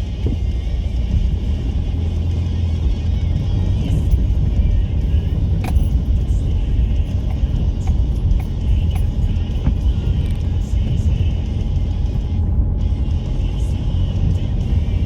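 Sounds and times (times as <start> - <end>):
diesel engine rumbling: 0.0 - 15.0.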